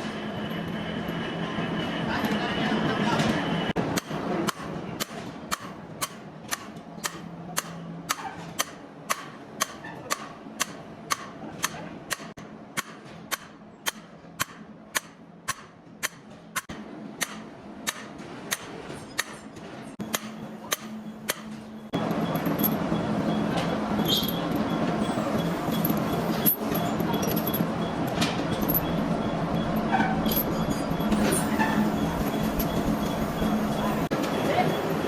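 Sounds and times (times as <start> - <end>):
sharp metallic taps: 3.9 - 19.4, 20.0 - 21.6.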